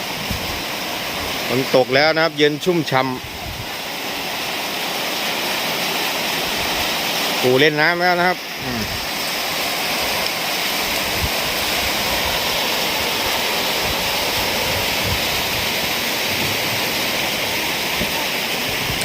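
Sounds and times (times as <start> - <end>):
heavy rain: 0.0 - 19.0.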